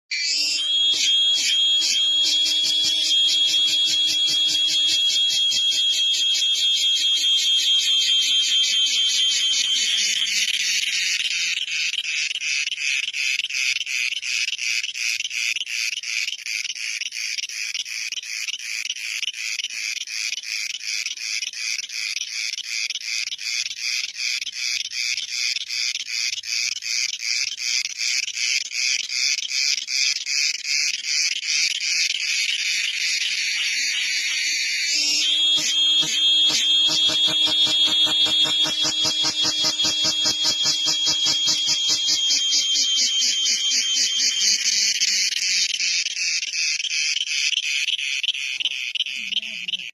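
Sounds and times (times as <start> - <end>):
cicadas buzzing: 23.3 - 46.0.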